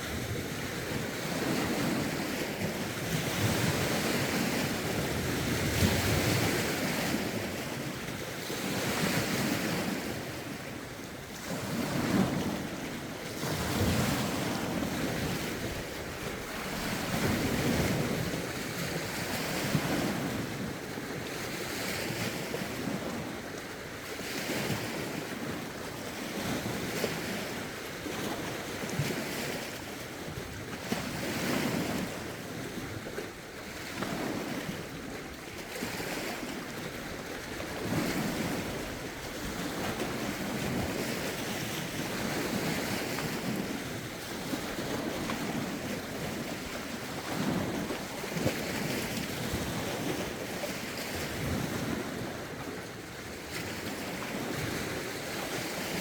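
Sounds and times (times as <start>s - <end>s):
wind rumbling on microphone: 0.0s - 23.5s
lake waves washing in: 0.0s - 56.0s.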